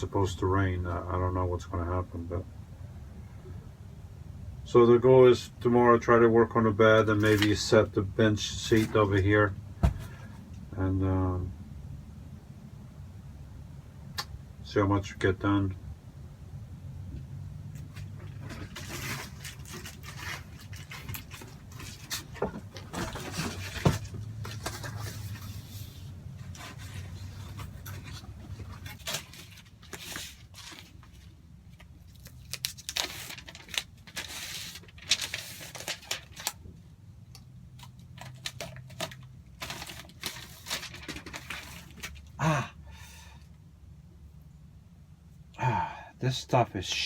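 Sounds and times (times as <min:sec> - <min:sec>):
foil tape crinkling and tearing: 0:17.8 - 0:25.9, 0:26.5 - 0:31.3, 0:32.0 - 0:36.6, 0:37.8 - 0:42.3.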